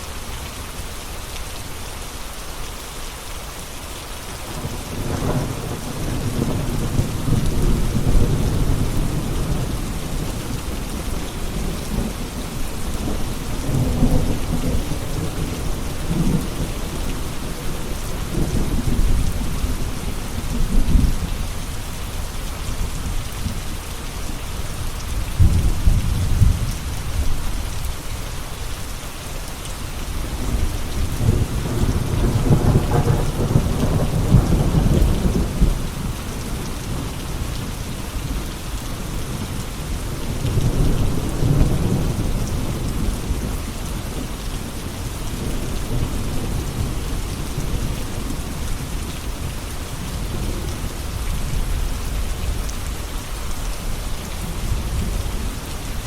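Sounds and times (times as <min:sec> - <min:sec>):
steady rain falling: 0:00.0 - 0:56.0
thunder rumbling: 0:04.5 - 0:21.4, 0:25.2 - 0:27.4, 0:30.3 - 0:37.4.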